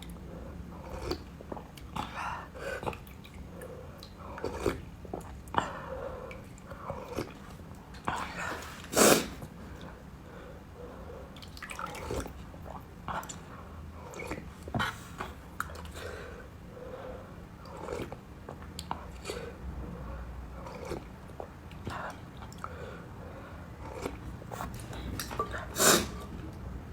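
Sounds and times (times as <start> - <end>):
chewing with wet mouth smacks: 2.8 - 5.7, 20.6 - 22.8.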